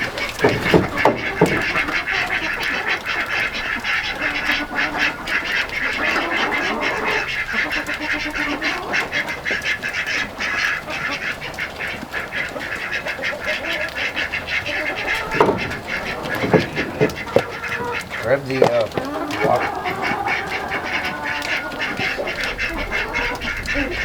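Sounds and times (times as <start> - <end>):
knocks: 0.0 - 2.4, 15.1 - 20.2
flock of poultry calling: 0.0 - 24.0.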